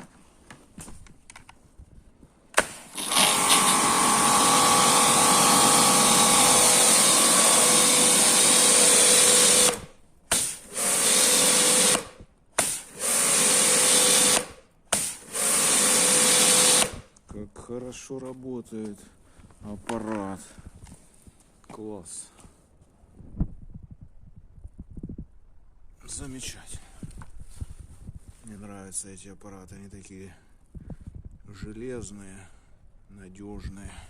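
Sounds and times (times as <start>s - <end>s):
pressure washer motor and pump: 2.6s - 17.1s.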